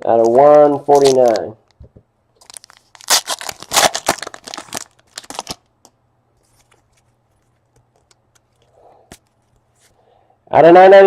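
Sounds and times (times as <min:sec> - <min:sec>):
wrapper crinkling and tearing: 0:00.2 - 0:01.6, 0:02.4 - 0:05.7.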